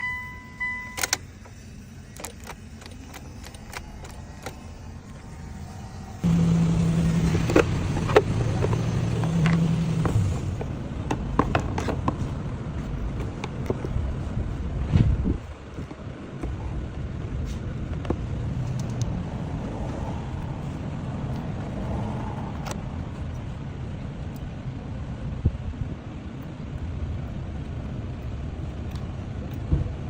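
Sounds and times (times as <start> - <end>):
short electronic beep: 0.0 - 1.1
car engine starting and running: 0.0 - 30.0.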